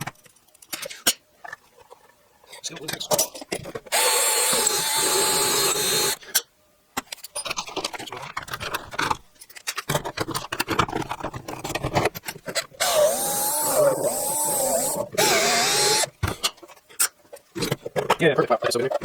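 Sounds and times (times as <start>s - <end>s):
drill bit scraping plastic: 3.9s - 6.2s, 12.5s - 16.2s
power drill running: 3.9s - 6.2s, 12.8s - 16.1s.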